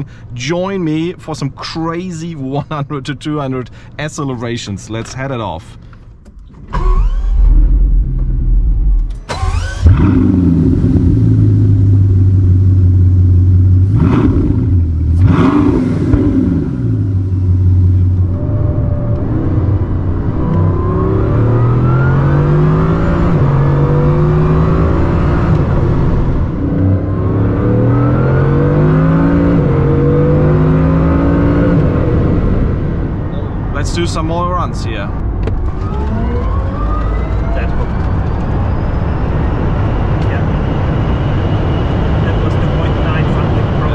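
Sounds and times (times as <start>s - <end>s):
sports car accelerating at speed: 7.0s - 33.6s, 35.4s - 43.9s.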